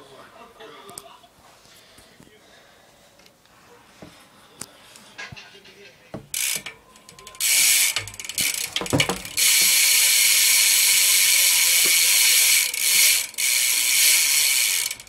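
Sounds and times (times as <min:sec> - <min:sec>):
bike hub ratcheting clicks: 0:06.3 - 0:15.0
knocks: 0:08.7 - 0:09.8.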